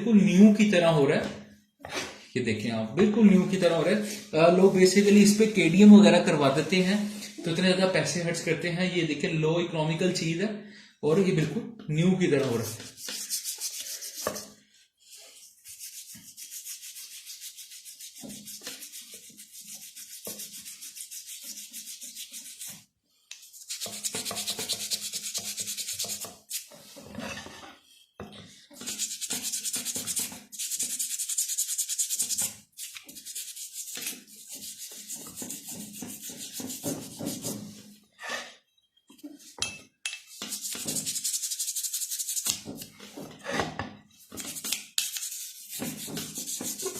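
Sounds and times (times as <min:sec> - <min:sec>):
hand scrubbing metal: 0:12.4 - 0:27.0, 0:28.8 - 0:37.8, 0:40.2 - 0:42.8, 0:44.3 - 0:46.9.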